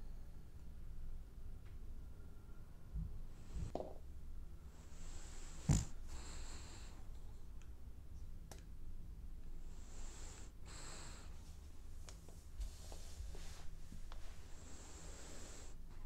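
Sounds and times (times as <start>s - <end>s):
dog snoring: 4.8s - 7.0s, 9.6s - 11.4s
dog snorting: 5.3s - 6.6s.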